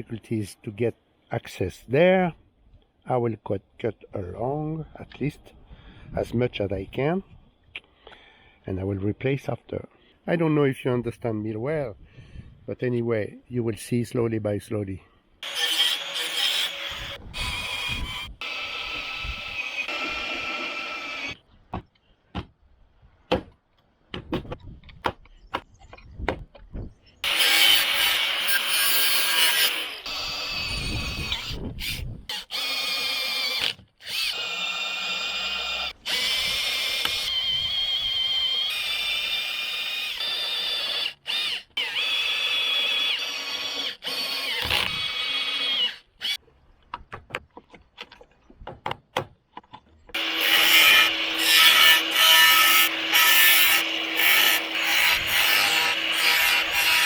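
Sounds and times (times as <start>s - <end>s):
power tool whining on sheet metal: 15.4s - 21.4s, 27.2s - 46.4s, 50.2s - 57.0s.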